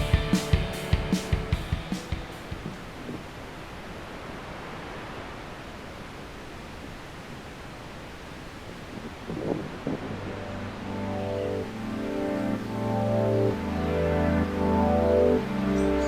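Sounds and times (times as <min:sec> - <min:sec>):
strong wind blowing: 0:08.4 - 0:11.1.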